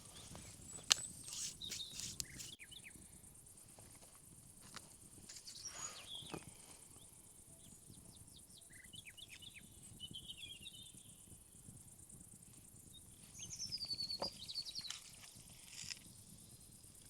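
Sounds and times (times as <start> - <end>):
short bird chirps: 0.0 - 2.9
high insect trill: 0.0 - 17.0.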